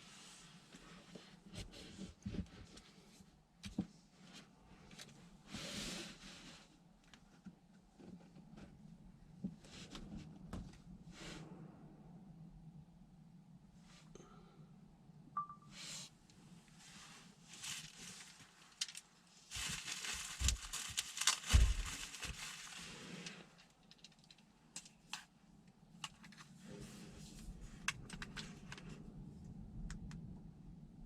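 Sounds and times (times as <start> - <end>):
low steady hum: 0.0 - 31.0
rustling: 16.8 - 24.3.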